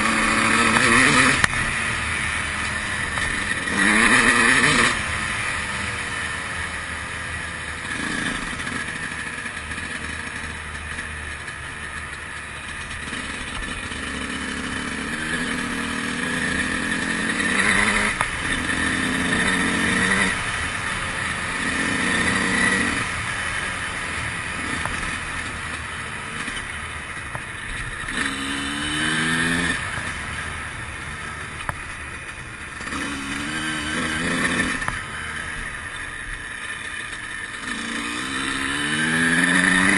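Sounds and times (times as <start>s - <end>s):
two-stroke motorcycle engine revving: 0.0s - 39.9s.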